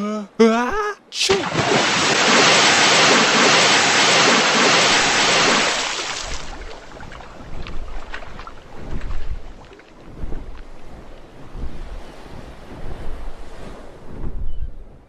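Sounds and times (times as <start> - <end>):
cartoon sneeze rush: 1.1 - 2.0.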